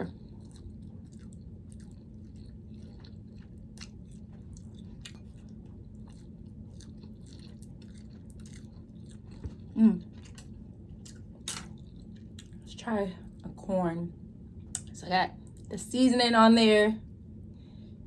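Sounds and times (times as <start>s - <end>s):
person chewing food: 0.0s - 12.7s.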